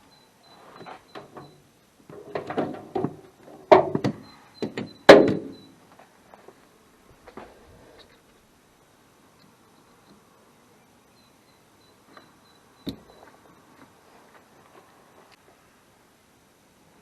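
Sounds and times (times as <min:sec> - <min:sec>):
hard objects knocking and thudding: 0:02.1 - 0:05.6.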